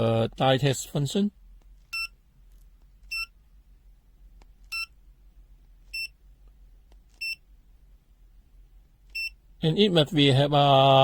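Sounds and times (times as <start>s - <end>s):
multimeter short beeps: 3.1s - 3.3s, 4.7s - 4.9s, 5.9s - 6.2s, 7.2s - 7.4s, 9.2s - 9.4s.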